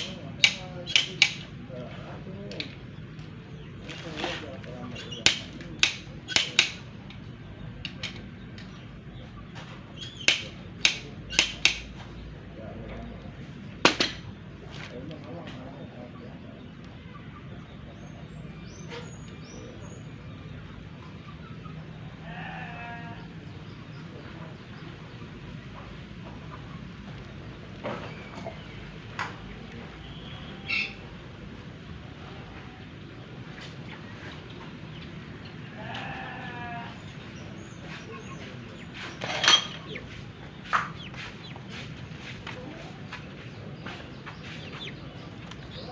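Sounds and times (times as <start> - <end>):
goat or sheep bleating: 22.2 - 23.4, 35.6 - 37.0.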